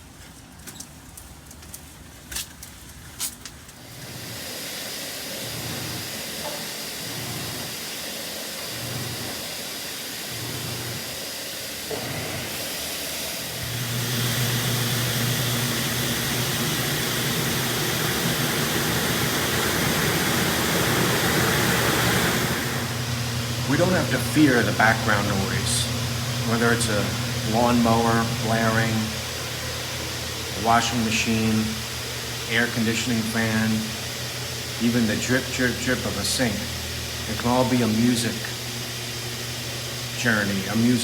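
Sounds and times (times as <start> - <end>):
machine hiss: 3.8 - 41.0
loud low hum: 13.5 - 41.0.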